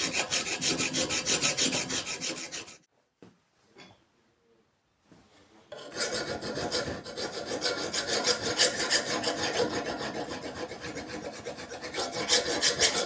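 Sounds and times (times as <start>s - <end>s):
hand file scraping: 0.0s - 2.9s, 5.7s - 13.0s.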